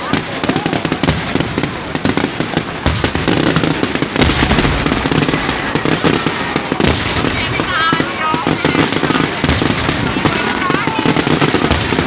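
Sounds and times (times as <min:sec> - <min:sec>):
firecrackers cracking: 0:00.0 - 0:12.0
deeper bangs: 0:01.0 - 0:10.4.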